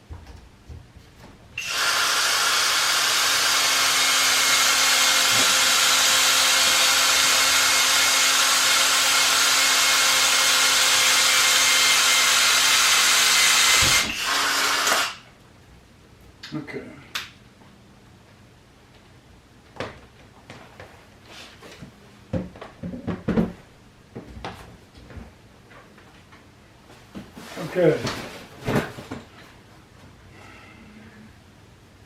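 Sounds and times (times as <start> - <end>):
electric caulking gun motor: 1.6 - 15.3.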